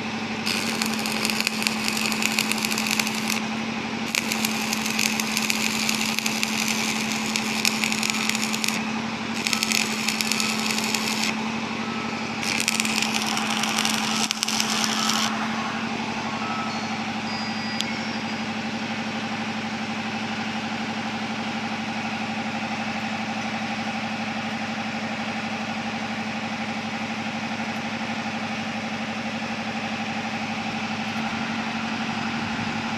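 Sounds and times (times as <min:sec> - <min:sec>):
engine humming: 0:00.0 - 0:25.3
arc welding crackle: 0:00.4 - 0:11.6, 0:12.4 - 0:15.4.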